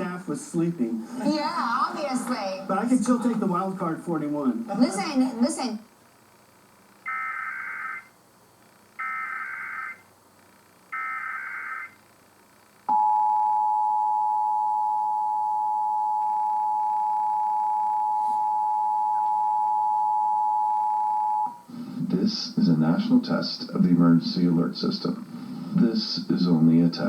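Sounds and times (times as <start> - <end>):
data burst tones: 7.0 - 8.2, 8.9 - 10.1, 10.8 - 12.2.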